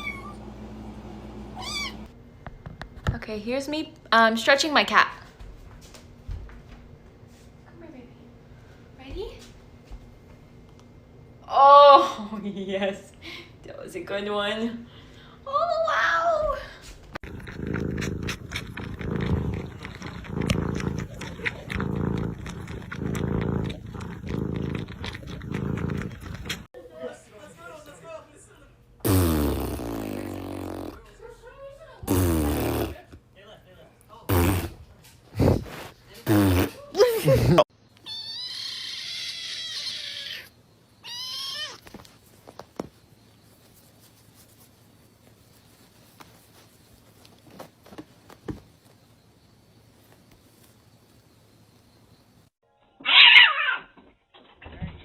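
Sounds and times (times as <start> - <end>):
cat meowing: 0.0 - 0.4, 1.6 - 2.1, 38.0 - 41.9, 53.0 - 53.9
pet's low rumble: 17.1 - 26.7.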